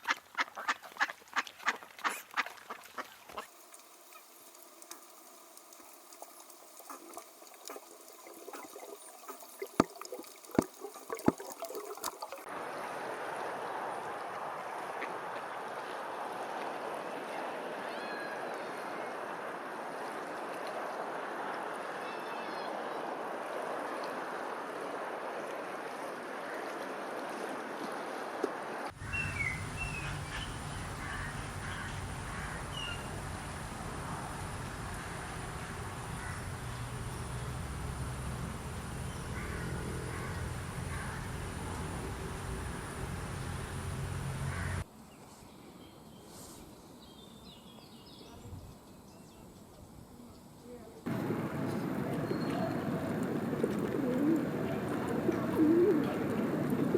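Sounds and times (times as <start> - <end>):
low steady hum: 51.1 - 56.9
rushing noise: 51.1 - 56.9.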